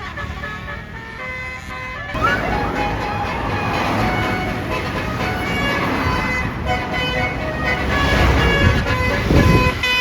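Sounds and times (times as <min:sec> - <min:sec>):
multi-tone bus air horn melody: 0:00.0 - 0:10.0
bus engine low rumble: 0:02.1 - 0:10.0.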